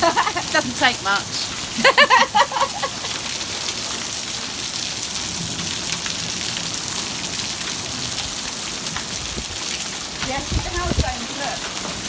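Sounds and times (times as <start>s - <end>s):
hailstones ticking: 0.0s - 12.0s
heavy rain pelting ground: 0.0s - 12.0s.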